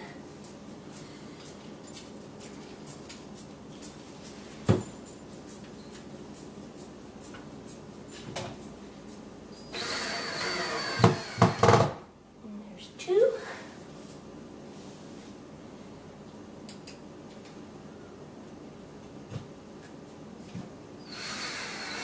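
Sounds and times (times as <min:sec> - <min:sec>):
power drill driving a screw: 0:09.7 - 0:11.9, 0:21.0 - 0:22.0.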